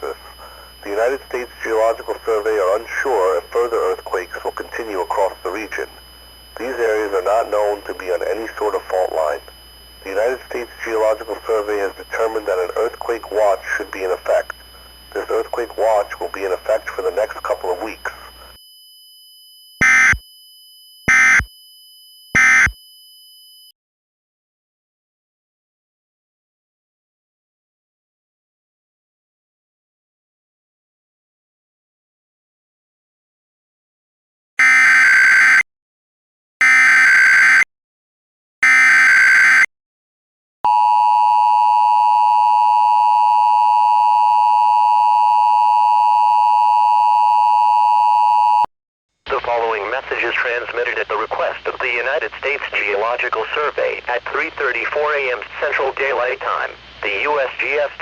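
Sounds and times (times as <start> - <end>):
data tone bursts: 0.0 - 18.6, 19.8 - 20.3, 21.1 - 21.5, 22.4 - 22.8
digital data tone bursts: 21.1 - 21.5.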